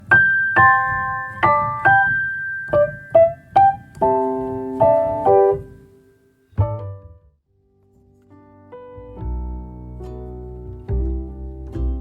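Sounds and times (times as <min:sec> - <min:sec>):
piano music: 0:00.0 - 0:07.4, 0:08.1 - 0:12.0.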